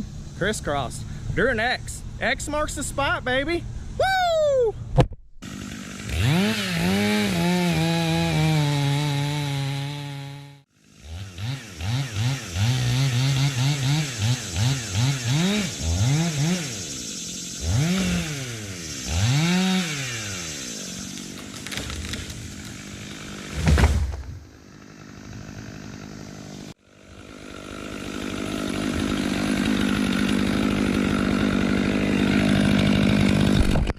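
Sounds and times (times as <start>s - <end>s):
chainsaw revving and idling: 5.4s - 33.9s
heavy thump: 23.5s - 24.4s.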